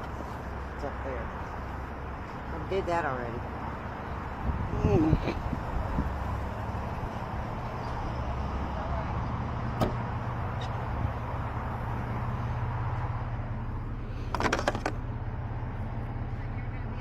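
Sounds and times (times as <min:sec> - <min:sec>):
vehicle engine idling: 0:00.0 - 0:17.0
rattling clatter: 0:14.2 - 0:15.0.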